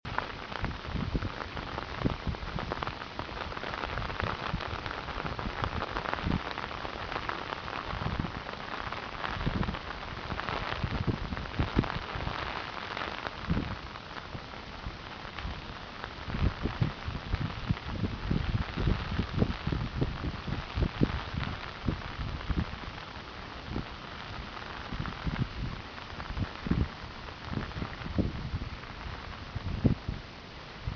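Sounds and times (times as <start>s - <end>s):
heavy rain pouring: 0.1s - 30.9s
wind gusts buffeting microphone: 0.1s - 30.9s.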